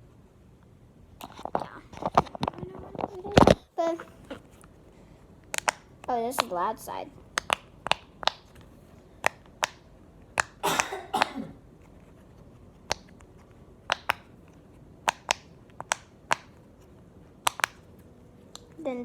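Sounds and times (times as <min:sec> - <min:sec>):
fidget toy clicks: 0:05.5 - 0:06.6, 0:07.3 - 0:08.5, 0:15.0 - 0:16.6, 0:17.4 - 0:17.8.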